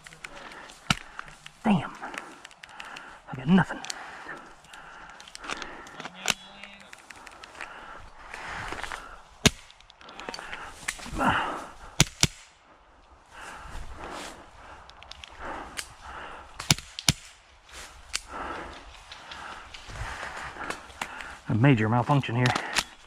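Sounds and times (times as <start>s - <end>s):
airsoft gun cracks: 9.4s - 11.0s, 12.0s - 12.6s, 16.6s - 17.4s.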